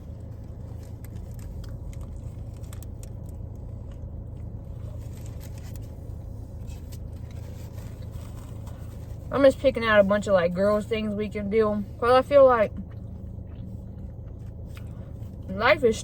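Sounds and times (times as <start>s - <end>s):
chewing and crunching food: 0.0s - 9.3s, 12.7s - 15.5s
steady low hum: 0.0s - 16.0s.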